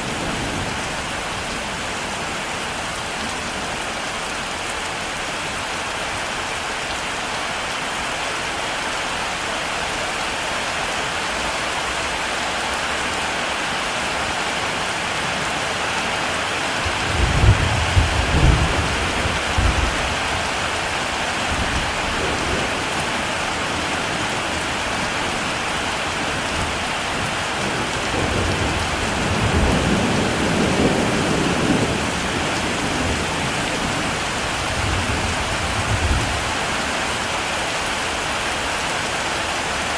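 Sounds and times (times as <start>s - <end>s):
heavy rain falling: 0.0s - 39.9s
rolling thunder: 16.9s - 23.4s, 26.3s - 36.6s.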